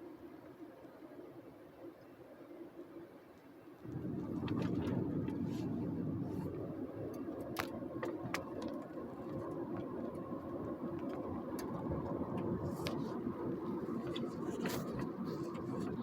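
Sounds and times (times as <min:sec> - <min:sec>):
road and engine rumble in car: 0:03.8 - 0:16.0
light ticks: 0:07.1 - 0:13.1.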